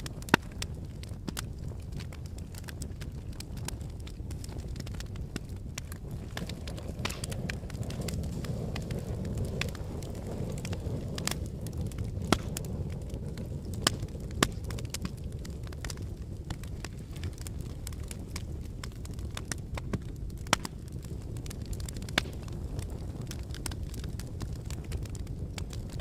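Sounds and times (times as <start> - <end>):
lava crackling and popping: 0.0 - 26.0
low volcanic rumble: 0.0 - 26.0
sharp cracks: 3.6 - 11.4, 12.0 - 13.1, 13.8 - 20.8, 21.8 - 22.6.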